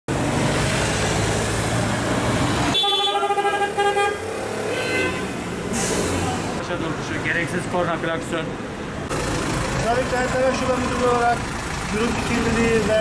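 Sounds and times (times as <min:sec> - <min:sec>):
street traffic noise: 0:00.1 - 0:13.0
vehicle horn honking: 0:02.7 - 0:05.4.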